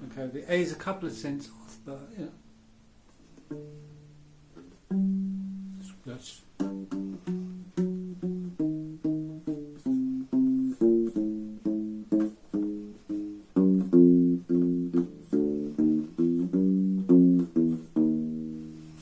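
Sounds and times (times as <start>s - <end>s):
bass ukulele plucked notes: 1.8s - 6.0s, 6.6s - 19.0s.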